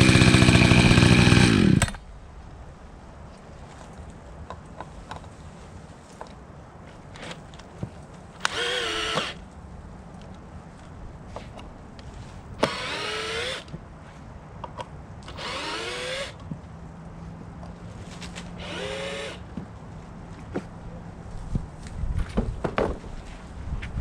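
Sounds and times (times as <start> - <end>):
small power tool motor: 0.0 - 1.9, 8.4 - 9.4, 12.6 - 13.7, 15.3 - 16.4, 18.6 - 19.4.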